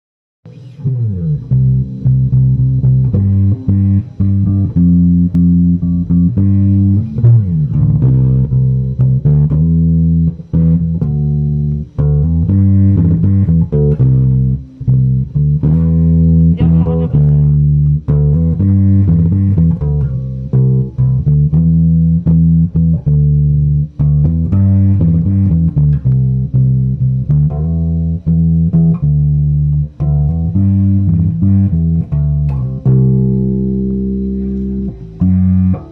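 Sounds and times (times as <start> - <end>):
electric bass guitar plucked notes: 0.4 - 35.9.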